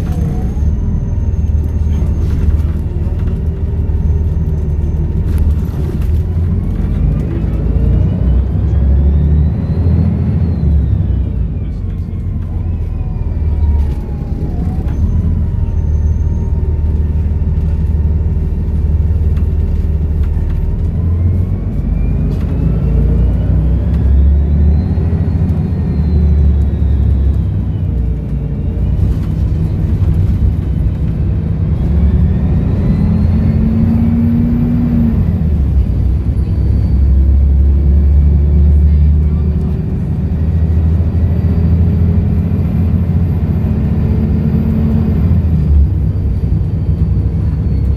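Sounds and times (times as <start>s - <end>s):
diesel bus engine rumbling: 0.0s - 47.9s.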